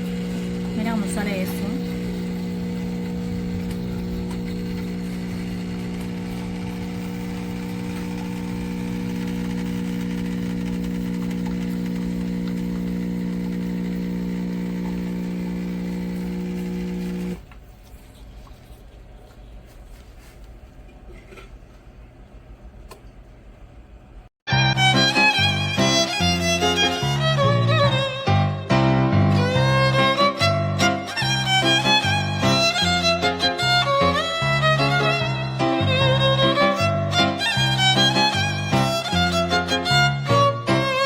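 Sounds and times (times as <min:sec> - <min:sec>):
espresso machine pump buzzing: 0:00.0 - 0:17.6, 0:31.2 - 0:33.4, 0:37.6 - 0:39.1.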